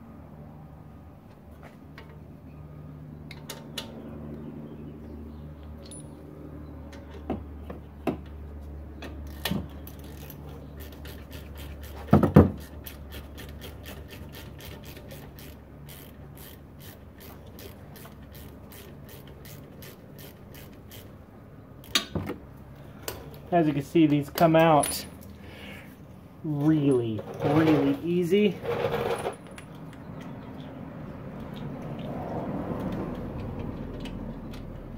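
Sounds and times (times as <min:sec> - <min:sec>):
quick ratchet clicks: 0:09.2 - 0:21.1.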